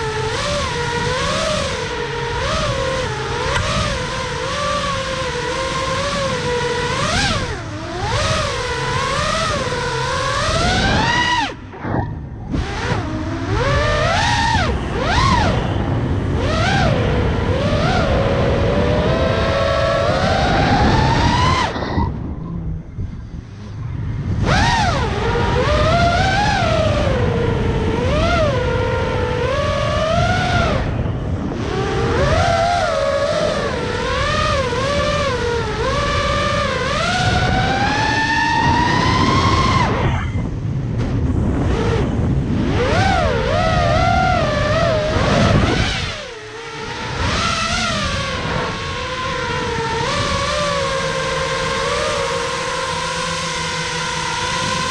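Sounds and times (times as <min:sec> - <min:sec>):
drone motors whining: 0:00.0 - 0:54.9
low rushing noise: 0:03.4 - 0:27.8, 0:28.5 - 0:54.9.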